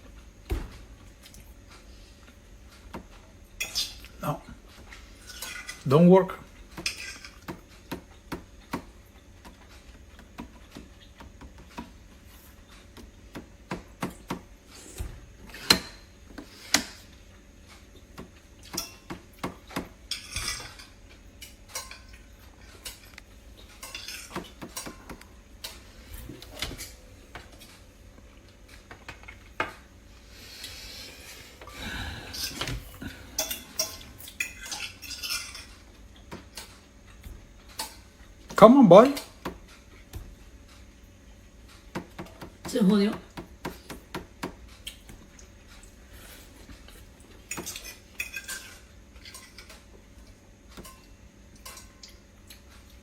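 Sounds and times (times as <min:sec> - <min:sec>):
kitchen items clinking: 0:31.7 - 0:36.8, 0:47.5 - 0:49.9.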